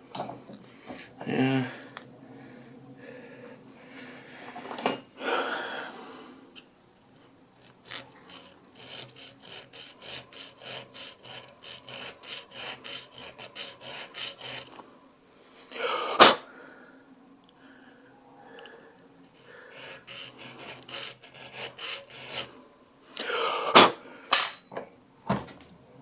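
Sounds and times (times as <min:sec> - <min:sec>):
hand file rasping metal: 0:07.6 - 0:14.8, 0:19.3 - 0:22.5.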